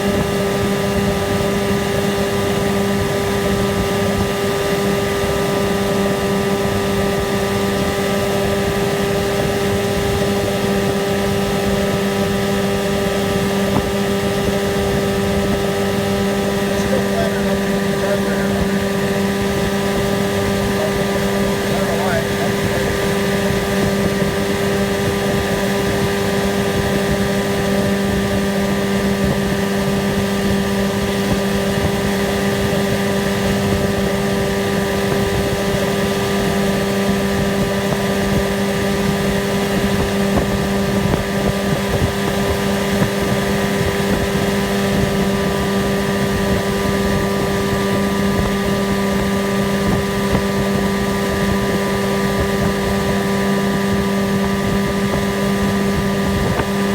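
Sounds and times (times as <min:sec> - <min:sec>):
outboard motor droning: 0:00.0 - 0:56.9.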